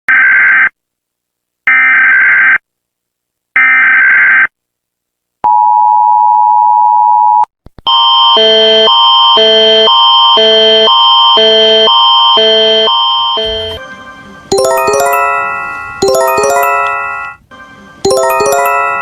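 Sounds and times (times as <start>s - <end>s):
alarm of stacked tones: 12.4s - 17.4s, 18.0s - 19.0s
two-note attention tone: 13.4s - 17.4s, 18.0s - 19.0s.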